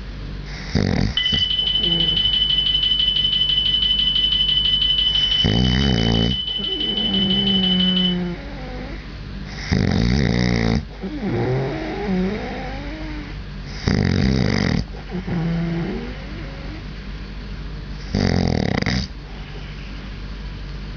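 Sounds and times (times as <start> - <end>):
loud harsh snoring: 0.5 - 1.2, 8.6 - 13.0, 13.7 - 16.2, 18.1 - 19.1
high steady alarm tone: 1.2 - 8.4.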